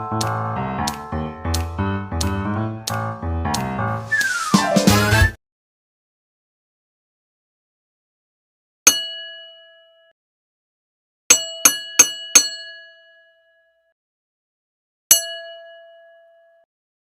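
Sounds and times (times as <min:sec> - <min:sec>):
boxing ring bell ringing: 0:08.9 - 0:10.0, 0:11.3 - 0:13.6, 0:15.1 - 0:16.7.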